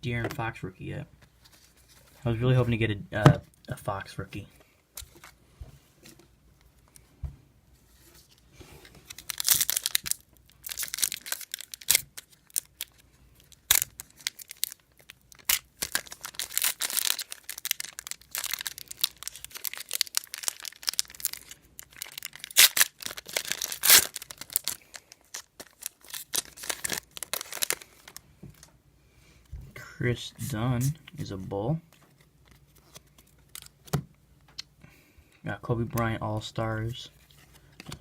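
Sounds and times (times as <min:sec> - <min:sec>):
wrapper tearing and crinkling: 0:09.0 - 0:28.2, 0:32.4 - 0:33.7.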